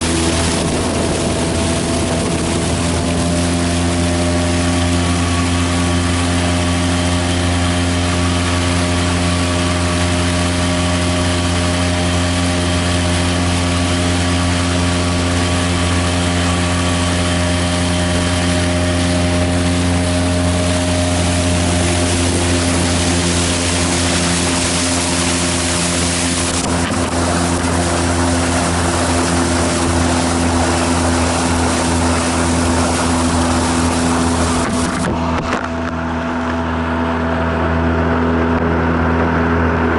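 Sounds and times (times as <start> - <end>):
water hissing: 0.0 - 35.1
outboard motor running: 0.0 - 39.9
wind: 0.0 - 39.9.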